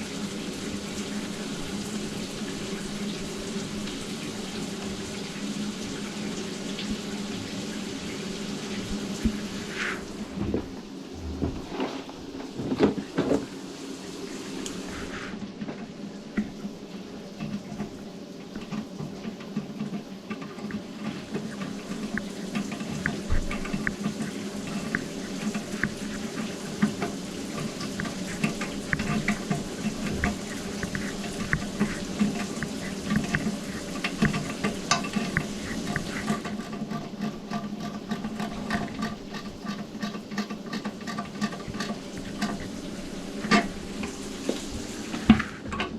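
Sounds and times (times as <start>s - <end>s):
motor hum: 0.0s - 45.9s
clicking and crackling rattle: 17.3s - 45.9s.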